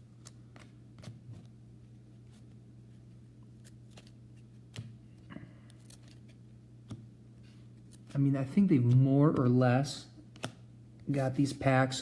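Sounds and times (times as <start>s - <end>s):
steady low hum: 0.0s - 12.0s
cards sliding and clicking: 10.3s - 10.6s.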